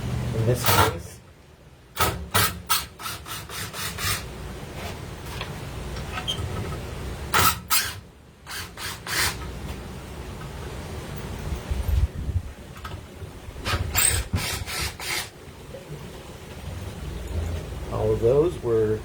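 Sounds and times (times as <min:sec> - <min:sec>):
drill backing out screws: 0:07.4 - 0:09.5, 0:13.6 - 0:15.3.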